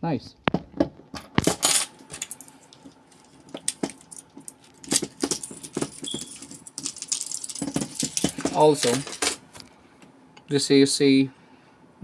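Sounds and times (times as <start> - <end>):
padlock and plastic devices clinking: 1.3 - 9.4.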